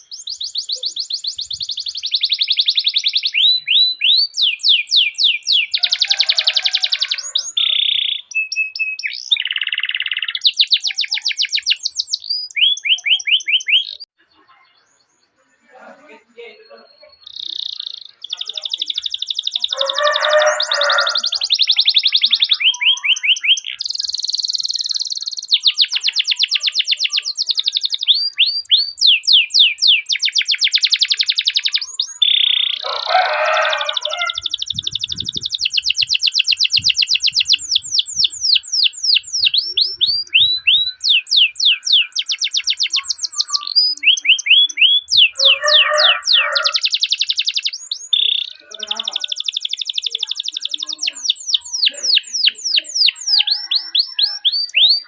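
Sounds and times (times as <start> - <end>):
canary singing trills: 0.0 - 55.0.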